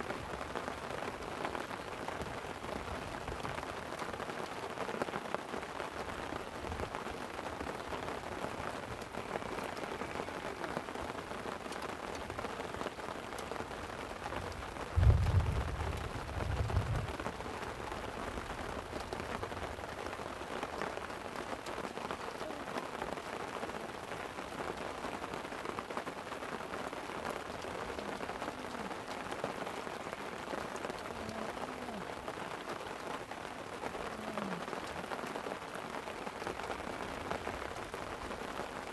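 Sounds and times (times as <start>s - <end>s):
light rain pattering on a tent: 0.0s - 38.9s
low rumble of thunder: 14.9s - 17.6s.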